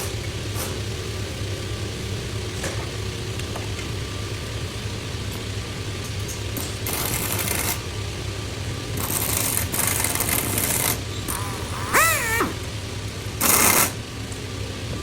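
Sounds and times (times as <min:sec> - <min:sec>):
machinery hum: 0:07.0 - 0:13.4.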